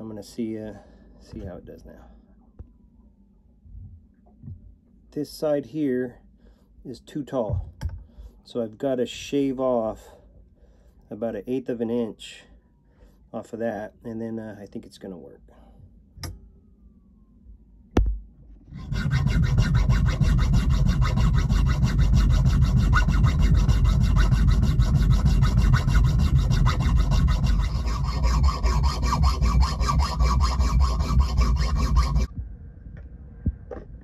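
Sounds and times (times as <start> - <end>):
file scraping metal: 18.7 - 32.3.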